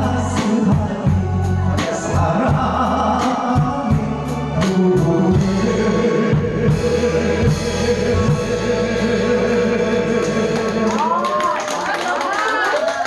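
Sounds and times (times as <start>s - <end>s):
drum and cymbal strokes: 0.4s - 10.4s.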